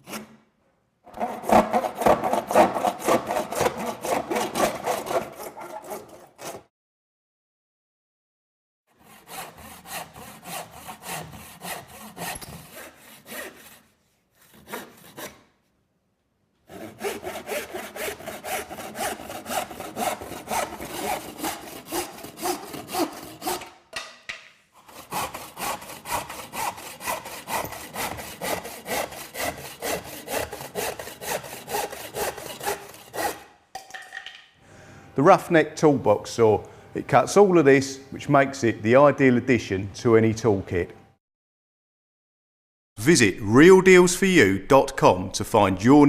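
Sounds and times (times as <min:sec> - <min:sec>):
handsaw cutting: 0:00.0 - 0:00.4, 0:01.1 - 0:06.7, 0:08.9 - 0:15.5, 0:16.7 - 0:23.8, 0:24.8 - 0:33.5.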